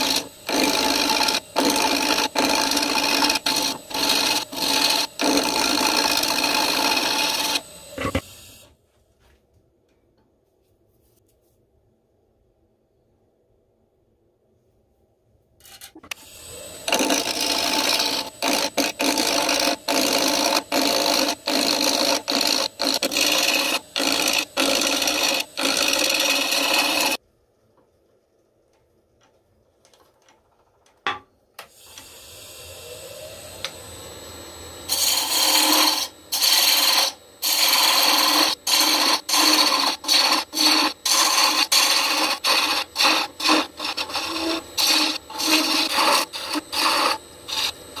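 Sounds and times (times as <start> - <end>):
turning tool scraping wood: 0.0 - 8.2, 16.0 - 27.2, 34.9 - 48.0
wood lathe running: 0.0 - 8.2, 16.4 - 27.2, 32.5 - 48.0.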